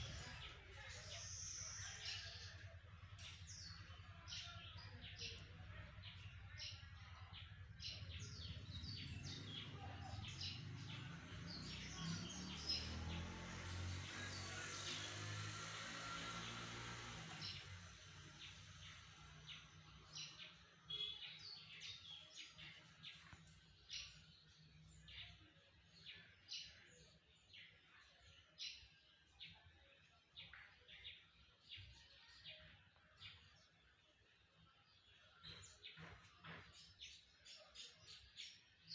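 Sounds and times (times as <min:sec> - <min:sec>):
birds chirping: 0:00.0 - 0:38.9
faint bird chirps: 0:20.3 - 0:24.3.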